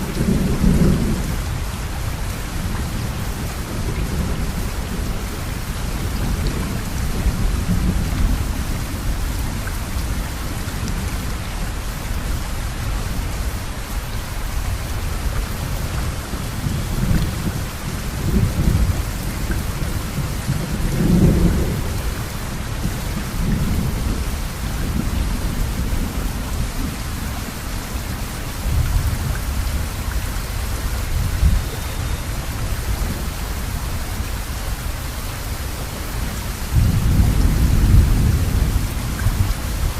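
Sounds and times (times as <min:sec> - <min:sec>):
thunder rumbling: 0:00.0 - 0:10.0, 0:15.6 - 0:27.7, 0:35.9 - 0:39.9
heavy rain: 0:00.0 - 0:39.9.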